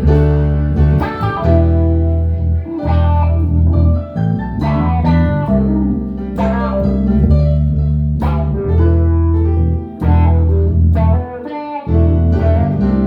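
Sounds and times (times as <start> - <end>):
band music: 0.0 - 13.0
bass notes: 0.0 - 13.0.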